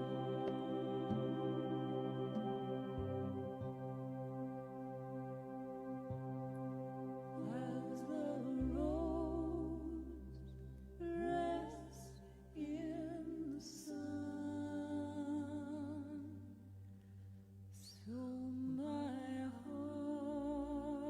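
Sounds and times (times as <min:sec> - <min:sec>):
keyboard chords: 0:00.0 - 0:11.8
sustained low bass: 0:00.0 - 0:21.0
person singing with vibrato: 0:07.3 - 0:10.3.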